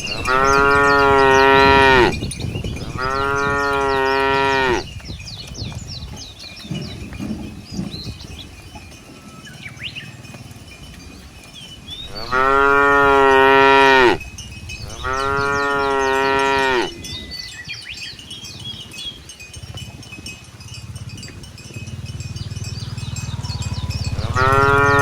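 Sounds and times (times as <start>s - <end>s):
cow mooing: 0.0s - 4.9s, 12.1s - 14.2s, 14.8s - 17.1s, 22.8s - 25.0s.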